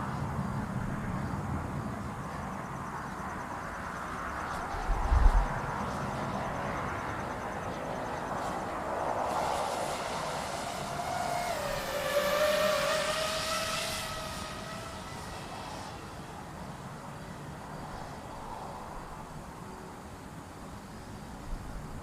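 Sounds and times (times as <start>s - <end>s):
quadcopter motors whining: 8.3s - 17.3s.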